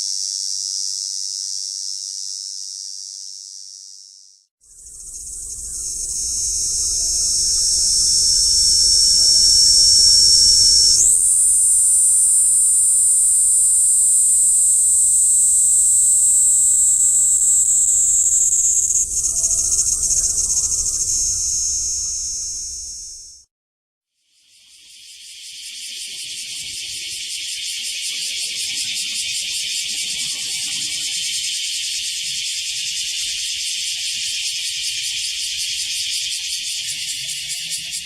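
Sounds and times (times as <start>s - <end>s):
cicada buzzing: 0.0s - 23.4s.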